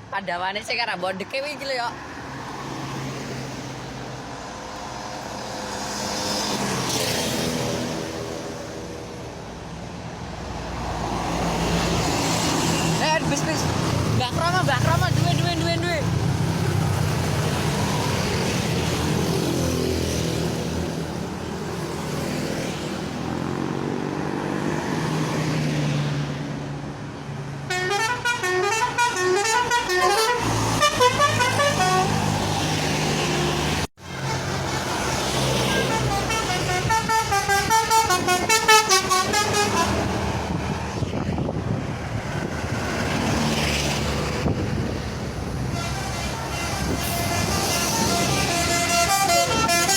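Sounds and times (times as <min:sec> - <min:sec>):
multi-tone musical horn: 0:27.7 - 0:32.4, 0:35.6 - 0:40.1, 0:45.7 - 0:49.9.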